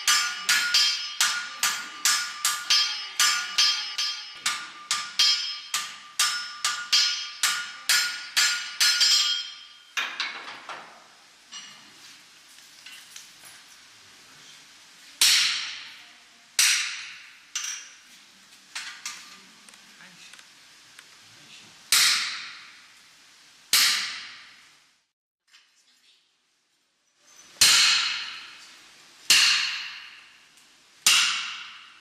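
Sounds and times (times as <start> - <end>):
hammer striking iron on anvil: 0.0 - 10.4, 15.2 - 16.0, 16.6 - 18.1, 21.9 - 22.9, 23.7 - 24.6, 27.6 - 28.7, 29.3 - 32.0.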